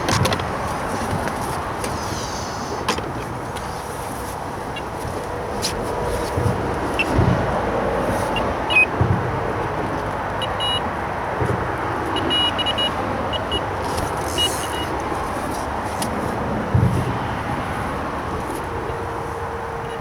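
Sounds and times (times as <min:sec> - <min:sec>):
road traffic noise: 0:00.0 - 0:20.0
low thuds: 0:02.9 - 0:14.2
high electronic beeps of bite alarms: 0:08.3 - 0:08.9, 0:10.4 - 0:10.9, 0:12.2 - 0:13.7, 0:14.3 - 0:14.9.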